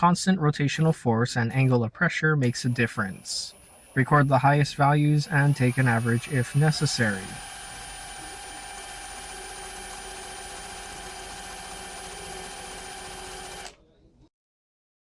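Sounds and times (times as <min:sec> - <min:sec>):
electric drill running: 0:00.8 - 0:13.8
screwdriver ratchet turning: 0:01.5 - 0:01.8, 0:02.4 - 0:13.8.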